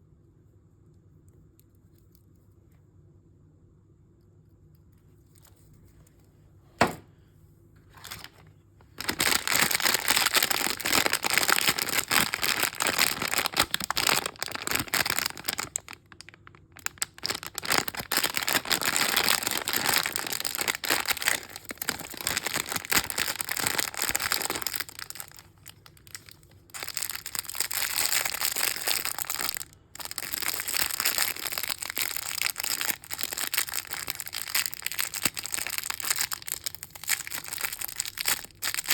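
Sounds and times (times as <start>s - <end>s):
packaging crinkling and tearing: 7.9s - 38.9s.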